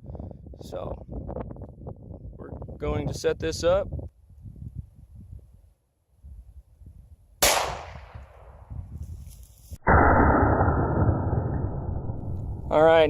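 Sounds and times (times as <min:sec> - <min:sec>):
gunshot: 0:07.4 - 0:08.2, 0:09.8 - 0:12.8.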